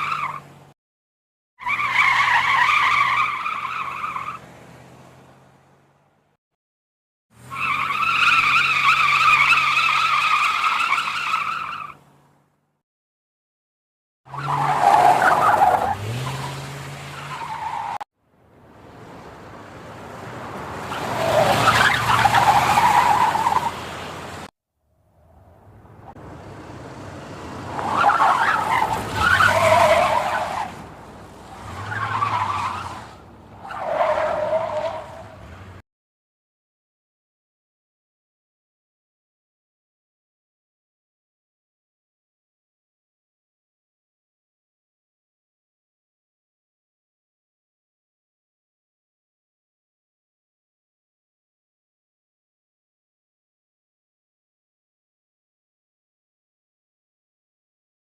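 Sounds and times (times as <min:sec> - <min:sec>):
car tires screeching: 0:00.0 - 0:00.7, 0:01.6 - 0:05.9, 0:07.4 - 0:12.3, 0:14.3 - 0:18.1, 0:18.7 - 0:24.5, 0:25.2 - 0:35.8
low engine hum: 0:23.5 - 0:31.8.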